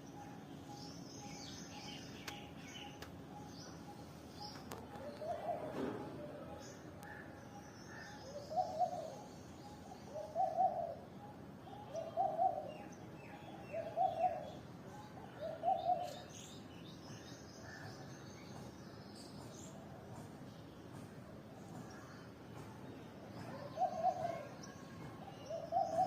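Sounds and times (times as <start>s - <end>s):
bird cooing: 4.7s - 6.6s, 8.2s - 9.3s, 10.0s - 12.9s, 13.7s - 16.3s, 23.4s - 24.5s, 25.5s - 26.0s.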